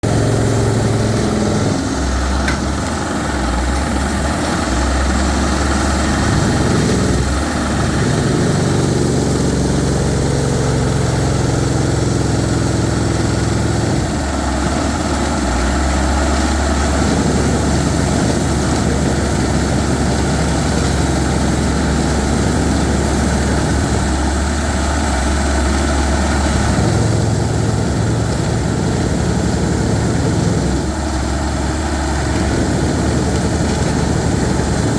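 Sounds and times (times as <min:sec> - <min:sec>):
deep engine hum: 0:00.0 - 0:34.9
rock drilling machine din: 0:00.0 - 0:34.9.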